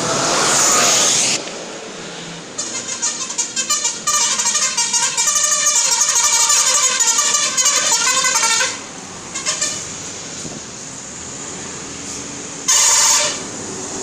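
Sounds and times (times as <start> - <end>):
street noise: 0.0 - 14.0
bus horn playing tune: 2.6 - 10.0, 12.7 - 13.6
loud horn blast: 2.6 - 10.0, 12.7 - 13.6
short horn toot: 9.4 - 9.9, 12.7 - 13.5.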